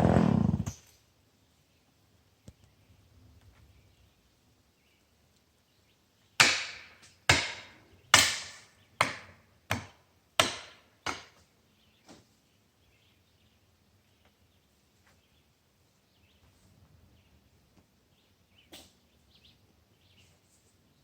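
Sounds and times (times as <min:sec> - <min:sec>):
hard blows into wood: 0:00.0 - 0:00.7.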